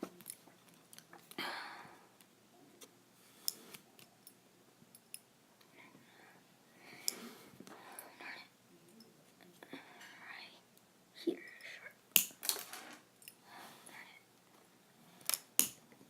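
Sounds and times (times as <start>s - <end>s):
small parts clicking and tapping: 11.5s - 13.4s, 15.2s - 15.8s.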